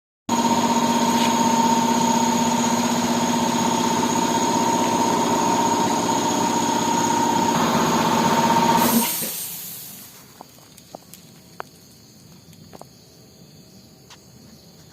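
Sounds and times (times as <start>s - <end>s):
engine running steadily: 0.3s - 10.5s.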